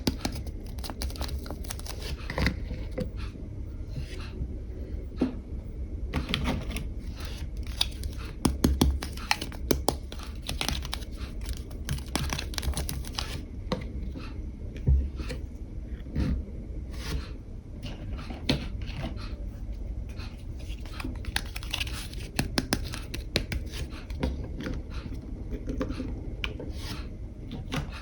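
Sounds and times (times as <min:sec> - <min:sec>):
plastic packaging clicks and crinkling: 0:00.0 - 0:02.2, 0:06.4 - 0:13.4, 0:20.8 - 0:23.7.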